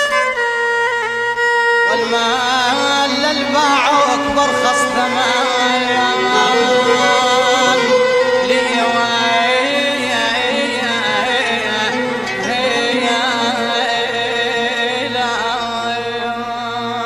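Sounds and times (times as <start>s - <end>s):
ornamented melody with accompaniment: 0.0s - 17.0s.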